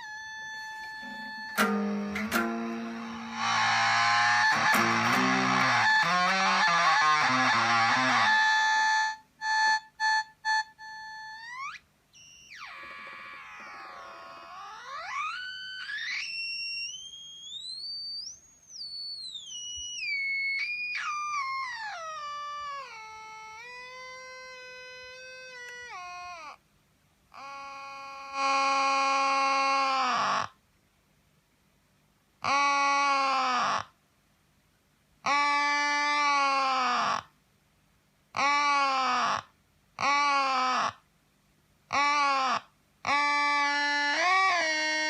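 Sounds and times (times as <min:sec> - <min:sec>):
fuzzed electric guitar: 0:00.0 - 0:08.5
oscillating fuzz pedal tones: 0:00.0 - 0:09.2, 0:10.5 - 0:25.9.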